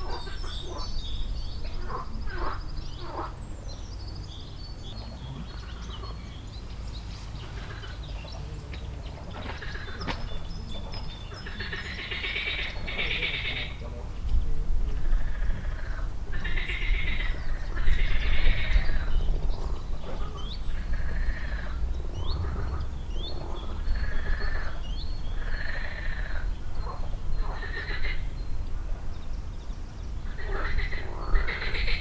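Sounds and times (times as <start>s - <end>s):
frogs croaking: 0.0s - 6.8s, 7.4s - 14.2s, 14.8s - 32.0s
low rumble: 18.7s - 27.4s.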